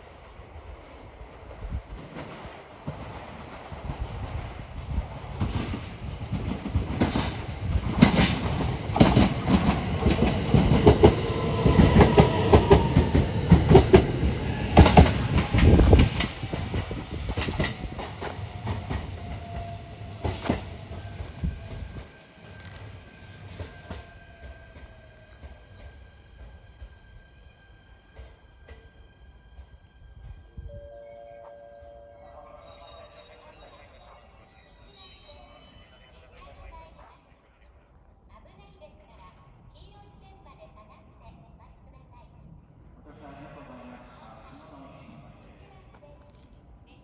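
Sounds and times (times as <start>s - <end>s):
train wheels clicking on rails: 5.4s - 26.6s.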